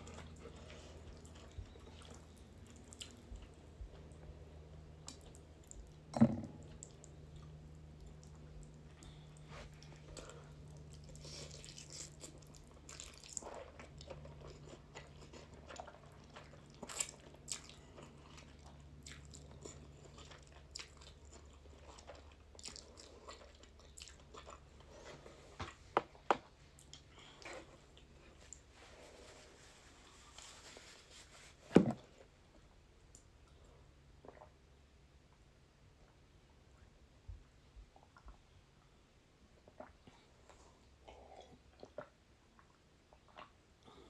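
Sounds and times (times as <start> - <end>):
chewing noodles: 0.0 - 29.4, 39.6 - 44.0.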